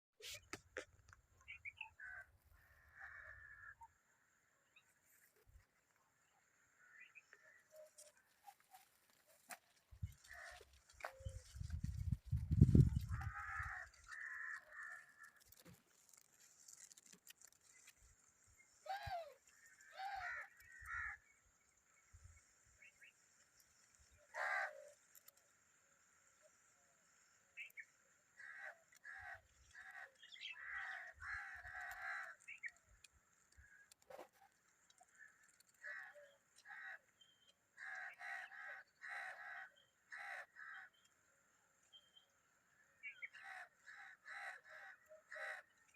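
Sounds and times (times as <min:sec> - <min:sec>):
harsh rasping bird calls: 0:00.2 - 0:04.0, 0:12.4 - 0:21.3, 0:24.1 - 0:25.1, 0:27.6 - 0:33.0, 0:33.6 - 0:41.1.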